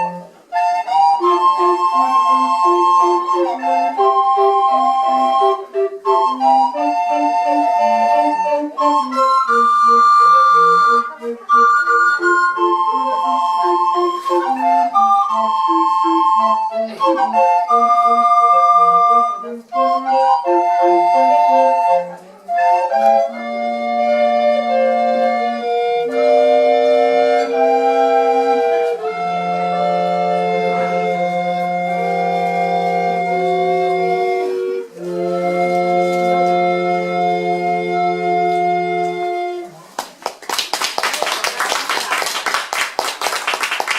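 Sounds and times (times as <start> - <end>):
recorder ensemble playing: 0.0 - 39.8.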